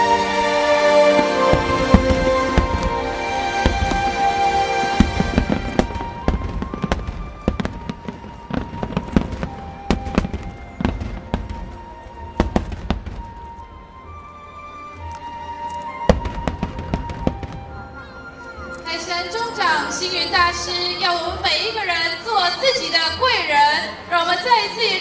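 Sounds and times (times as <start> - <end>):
music: 0.0 - 25.0
fireworks banging and crackling: 0.4 - 13.7, 16.0 - 18.0.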